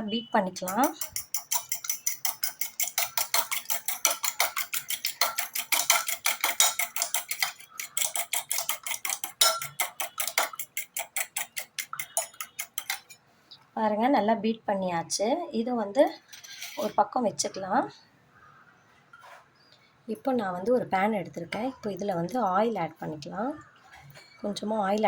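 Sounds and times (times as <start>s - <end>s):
utensil clicking against bowl: 0.6s - 13.2s.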